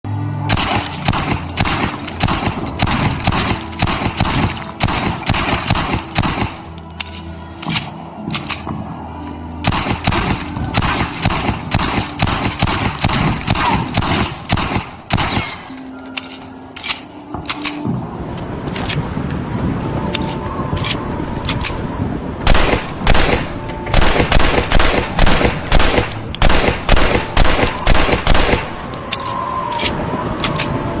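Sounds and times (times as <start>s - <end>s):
pistol automatic bursts: 0.5s - 6.6s, 9.7s - 15.4s, 22.5s - 28.9s
pistol single shots: 22.5s - 28.8s.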